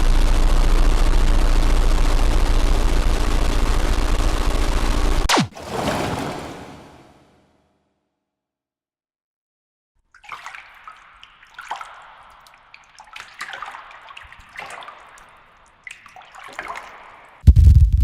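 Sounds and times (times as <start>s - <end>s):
water splashing: 5.3s - 7.2s, 10.1s - 17.4s
loud low rumble: 17.5s - 18.0s.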